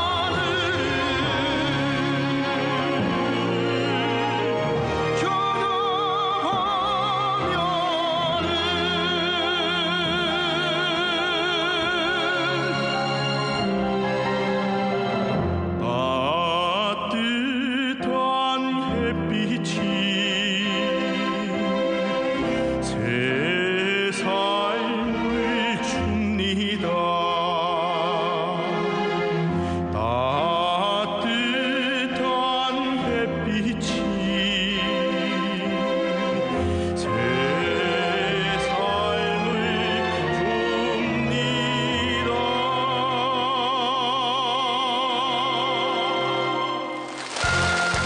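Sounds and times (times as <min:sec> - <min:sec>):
operatic singer with vibrato: 0:00.0 - 0:13.8, 0:15.7 - 0:48.0
orchestral backing: 0:00.0 - 0:48.0
sustained accompaniment: 0:19.0 - 0:48.0.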